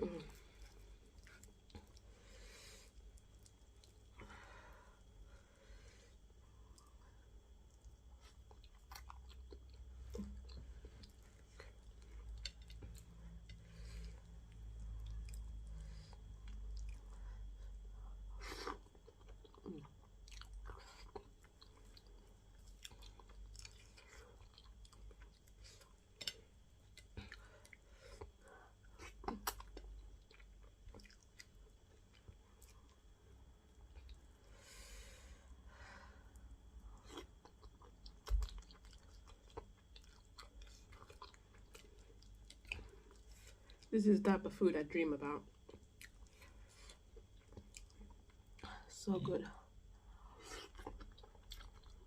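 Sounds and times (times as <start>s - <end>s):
person chewing and lip smacking: 7.7s - 17.8s, 18.6s - 33.1s, 36.8s - 43.9s, 45.5s - 48.8s, 50.3s - 52.0s.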